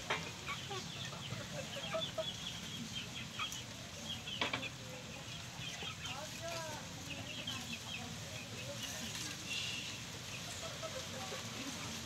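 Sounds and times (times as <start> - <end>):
chickens chirping: 0.0 - 12.0
chickens clucking: 0.0 - 12.0.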